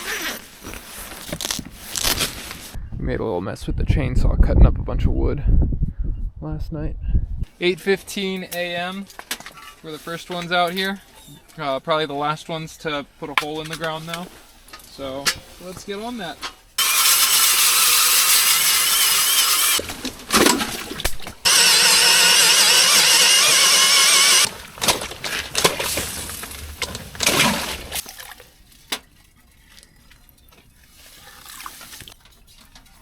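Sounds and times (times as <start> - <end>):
power tool boring through ice: 16.8 - 19.8, 21.4 - 24.5
ice knocking and clattering: 24.5 - 29.2.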